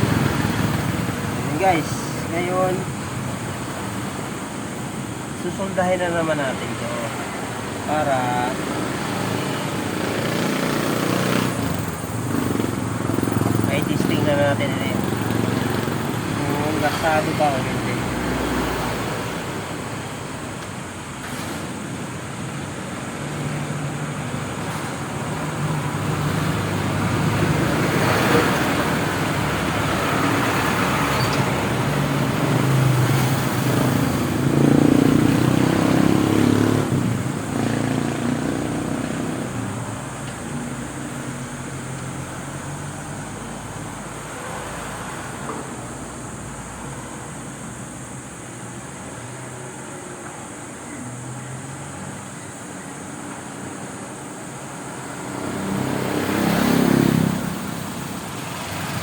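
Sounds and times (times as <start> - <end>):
noisy speaker hiss: 0.0 - 44.3.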